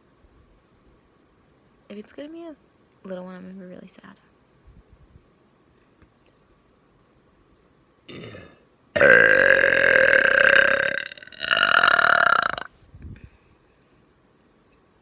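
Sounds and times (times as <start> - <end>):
woman burping loudly: 8.1 - 12.7.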